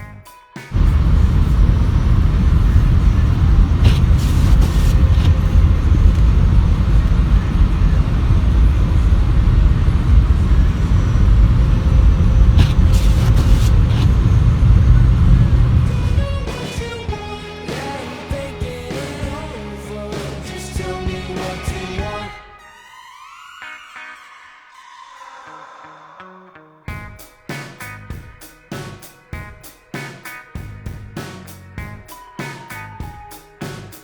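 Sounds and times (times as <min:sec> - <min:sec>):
loud low rumble: 0:00.8 - 0:16.6.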